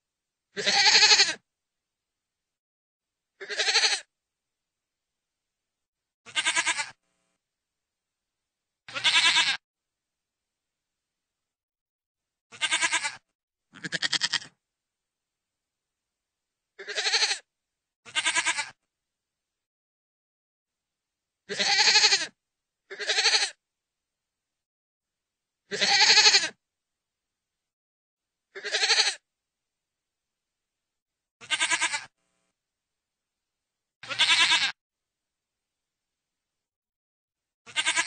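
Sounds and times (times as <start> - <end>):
goat bleating: 0.6 - 1.4, 3.4 - 4.1, 6.3 - 7.0, 8.9 - 9.6, 12.5 - 14.6, 16.8 - 17.5, 18.1 - 18.8, 21.5 - 23.6, 25.7 - 26.6, 28.6 - 29.2, 31.4 - 32.1, 34.0 - 34.8, 37.7 - 38.0.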